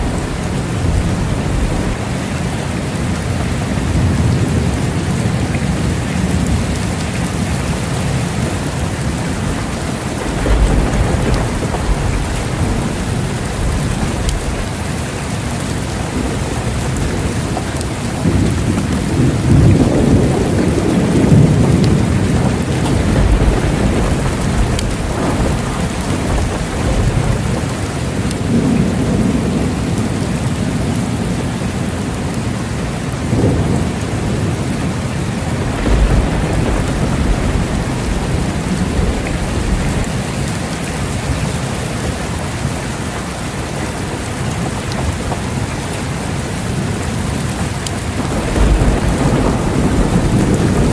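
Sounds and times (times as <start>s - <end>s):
steady rain falling: 0.0s - 50.9s
thunder rumbling: 0.0s - 50.9s.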